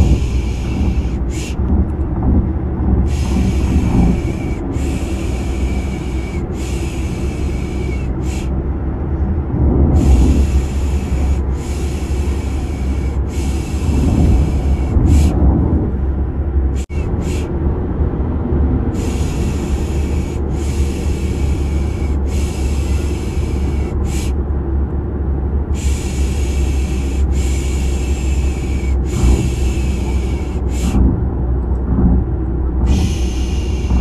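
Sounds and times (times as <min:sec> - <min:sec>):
car road noise rumble: 0:00.0 - 0:34.0
person shushing: 0:32.9 - 0:34.0.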